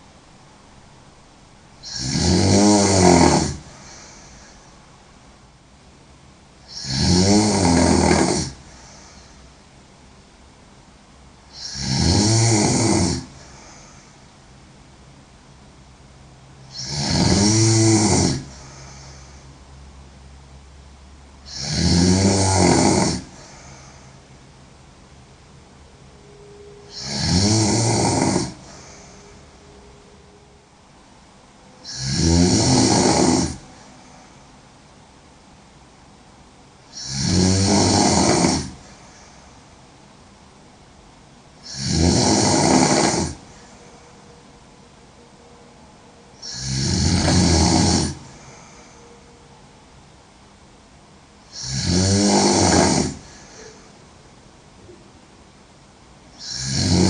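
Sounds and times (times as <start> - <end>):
woman snoring: 1.8 - 4.7, 6.6 - 9.4, 11.5 - 14.0, 16.6 - 19.4, 21.4 - 24.1, 26.8 - 29.6, 31.8 - 34.1, 36.8 - 39.2, 41.6 - 44.0, 46.3 - 49.2, 51.4 - 54.0, 56.3 - 57.0
quiet breathing: 2.8 - 7.0, 7.8 - 11.9, 13.0 - 17.0, 18.2 - 21.8, 22.8 - 37.2, 38.1 - 40.5, 41.2 - 50.6, 52.4 - 55.3.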